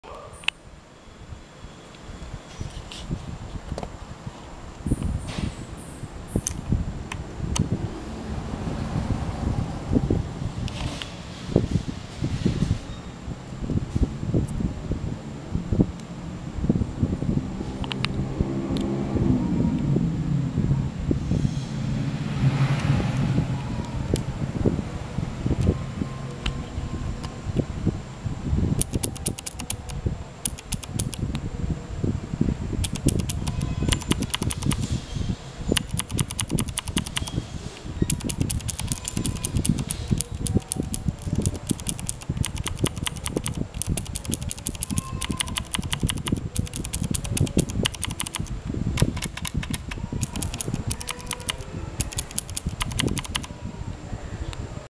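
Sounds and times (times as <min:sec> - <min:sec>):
clicky keyboard typing: 0:28.8 - 0:31.4, 0:32.8 - 0:34.9, 0:35.8 - 0:37.4, 0:38.0 - 0:53.5.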